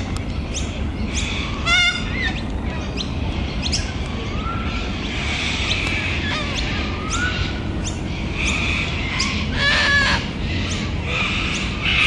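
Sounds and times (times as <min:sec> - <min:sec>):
birds chirping: 0:00.0 - 0:12.0
loud wavering bird call: 0:03.7 - 0:12.0.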